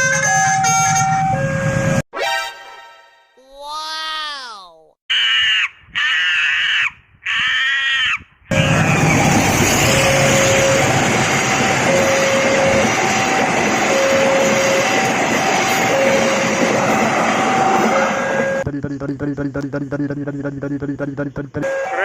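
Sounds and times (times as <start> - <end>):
passenger train passing: 8.5 - 18.7
two-tone warning signal: 8.5 - 18.7, 21.6 - 22.0.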